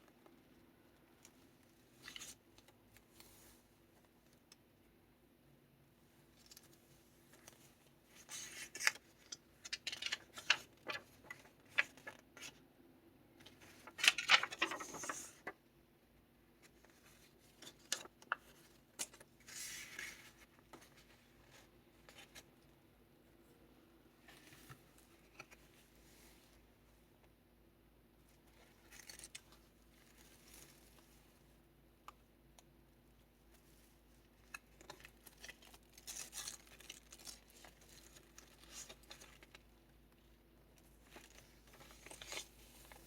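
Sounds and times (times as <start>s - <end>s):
paper rustling: 6.4s - 12.6s, 13.4s - 15.6s, 16.6s - 22.5s.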